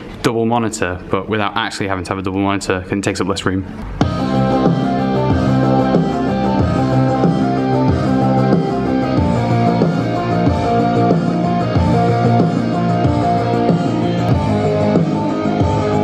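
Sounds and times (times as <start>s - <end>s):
instrumental guitar music: 3.7s - 16.0s.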